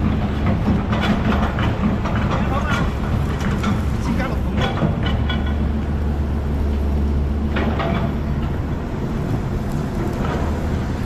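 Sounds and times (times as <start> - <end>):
heavy machine engine droning: 0.0 - 11.0.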